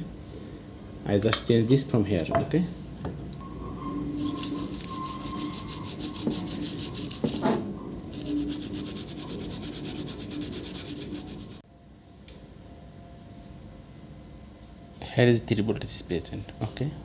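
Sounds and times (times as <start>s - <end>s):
fast rhythmic scrubbing strokes: 4.6s - 7.4s, 8.1s - 11.6s.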